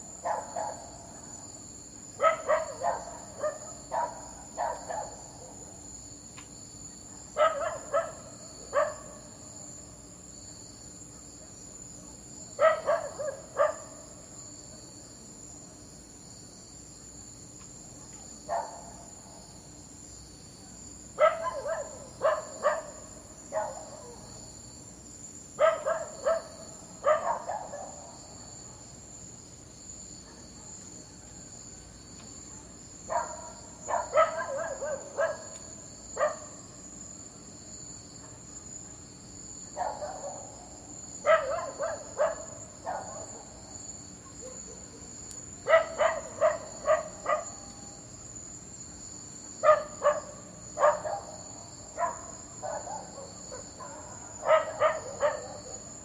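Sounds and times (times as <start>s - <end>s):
dog barking: 0.2s - 1.2s, 2.2s - 5.7s, 7.2s - 9.3s, 12.6s - 14.1s, 18.0s - 19.1s, 21.2s - 24.3s, 25.6s - 28.9s, 30.2s - 30.9s, 32.5s - 35.6s, 36.2s - 36.6s, 39.8s - 43.6s, 45.6s - 47.8s, 49.6s - 56.0s.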